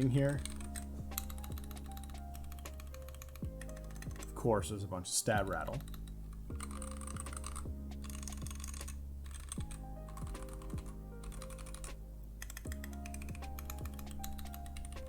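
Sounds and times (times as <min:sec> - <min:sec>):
rattling keyboard stabilizers: 0:00.0 - 0:04.8, 0:05.4 - 0:15.0
background music: 0:00.0 - 0:15.0.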